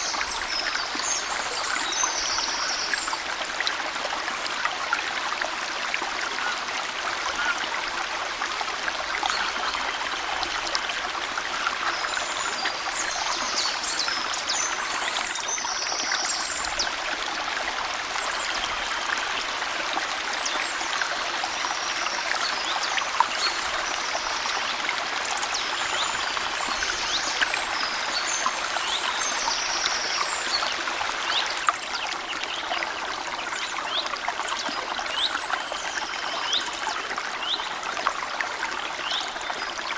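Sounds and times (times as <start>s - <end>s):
stream trickling over stones: 0.0s - 39.9s.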